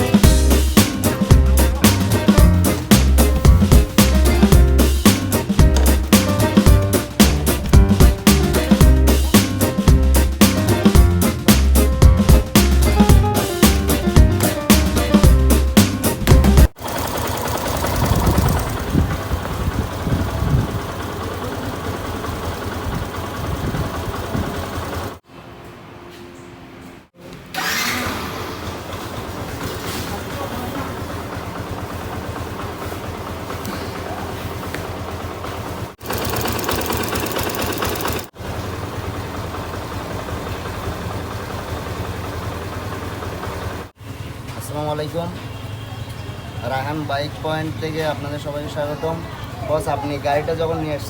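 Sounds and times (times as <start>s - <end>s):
motorcycle engine idling: 0.0s - 9.3s, 16.2s - 25.2s, 28.3s - 51.0s
background music: 0.0s - 16.8s.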